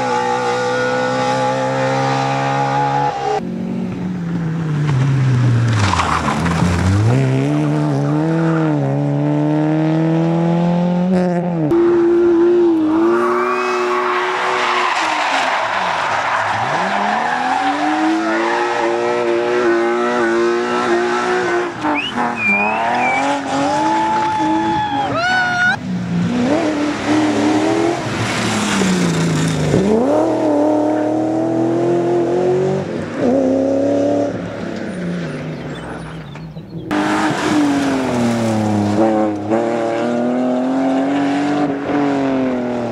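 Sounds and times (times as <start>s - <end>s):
rally car engine revving: 0.0s - 42.9s
tyre squeal: 21.8s - 25.8s.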